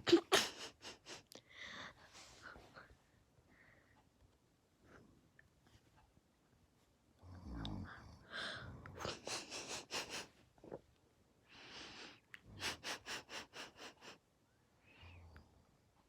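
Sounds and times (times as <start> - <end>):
faint low snore: 7.2 - 9.2.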